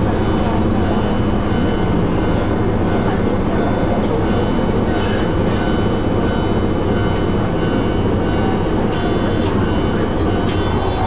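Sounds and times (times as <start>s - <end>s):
train wheels rumbling on rail: 0.0s - 11.0s
high-pitched wheel squeals: 10.4s - 11.0s.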